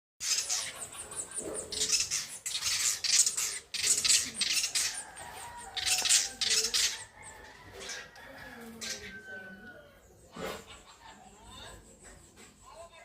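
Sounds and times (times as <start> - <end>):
high thin bird chirps: 0.2 - 8.1
birds squawking: 0.2 - 11.0.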